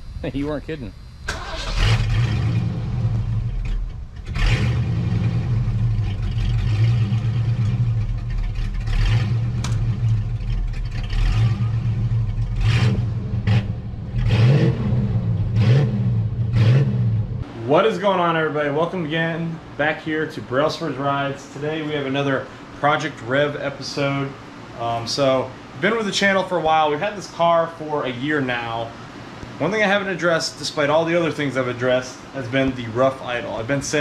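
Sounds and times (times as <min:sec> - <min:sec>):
car engine rough idle surging: 0:01.2 - 0:15.6.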